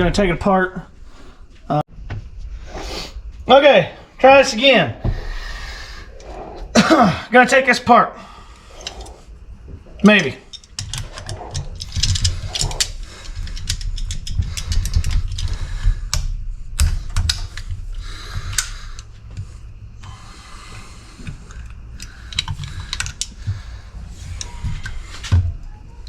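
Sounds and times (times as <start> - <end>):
metal tools clinking and clicking: 8.8 - 9.2, 10.0 - 15.6.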